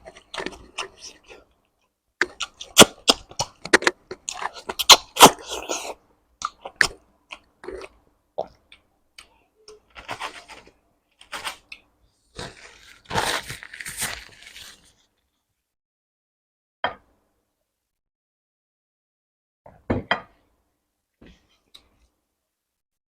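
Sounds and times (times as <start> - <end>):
person chewing: 0.0 - 1.6, 2.2 - 14.9.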